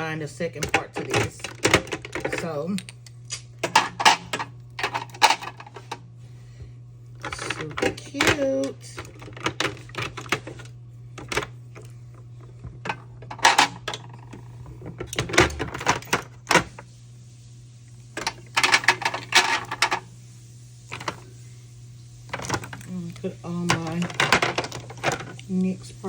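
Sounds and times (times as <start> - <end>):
plastic tubes clattering in drawer: 3.6 - 5.9, 23.5 - 25.4.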